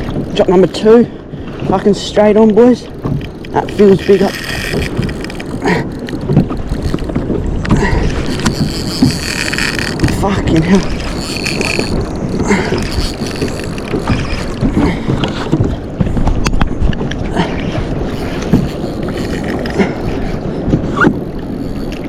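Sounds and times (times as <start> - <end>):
water sloshing around kayak: 0.0 - 22.0
wind buffeting microphone: 0.0 - 22.0
sharp clicks: 2.9 - 15.7.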